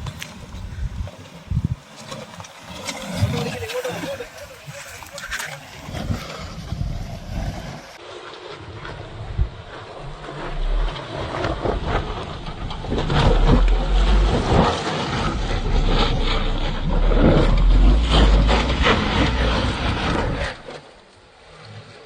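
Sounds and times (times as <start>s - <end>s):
wind buffeting microphone: 0.0s - 2.0s, 3.1s - 8.0s, 8.6s - 20.9s
off-road vehicle engine: 8.9s - 21.2s.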